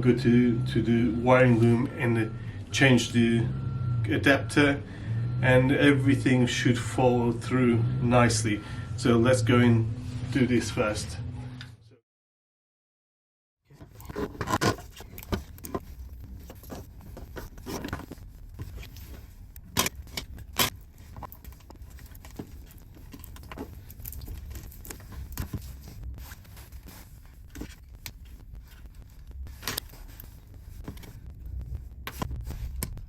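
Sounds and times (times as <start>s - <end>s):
low steady hum: 0.0s - 11.8s, 13.7s - 33.0s.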